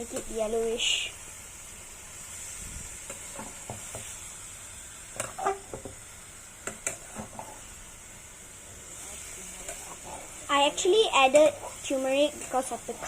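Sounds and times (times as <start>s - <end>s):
food sizzling in a pan: 0.0s - 13.0s
utensil scraping a pan: 5.2s - 5.9s.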